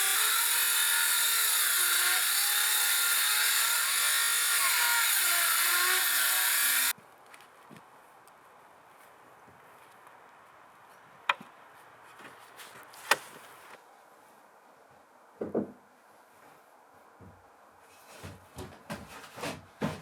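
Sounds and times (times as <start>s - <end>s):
wood knocking and tapping: 15.4s - 15.8s.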